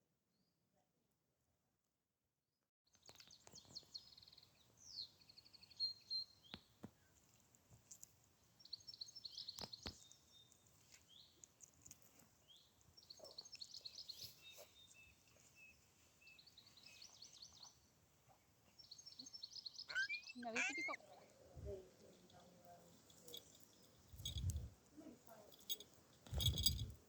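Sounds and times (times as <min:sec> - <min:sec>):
bird chirps and trills: 0:19.2 - 0:21.0.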